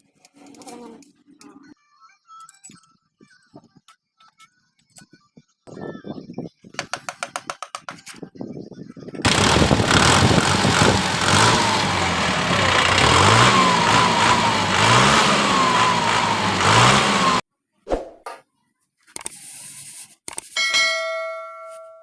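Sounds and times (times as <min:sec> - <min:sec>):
tractor diesel engine revving: 0:09.3 - 0:17.4.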